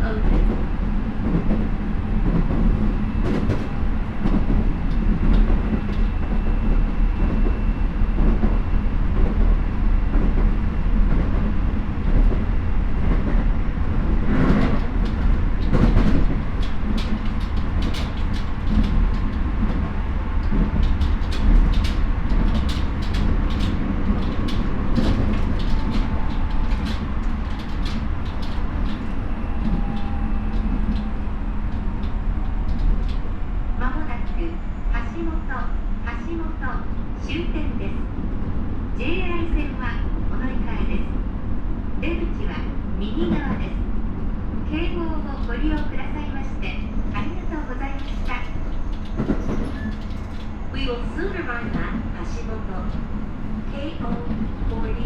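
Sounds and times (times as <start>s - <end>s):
train rolling rumble: 0.0s - 55.0s
wheels clicking over rail joints: 14.3s - 33.4s.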